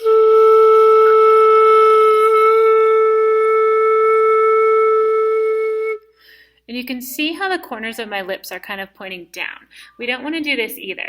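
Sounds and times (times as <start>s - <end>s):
flute note: 0.0s - 6.2s.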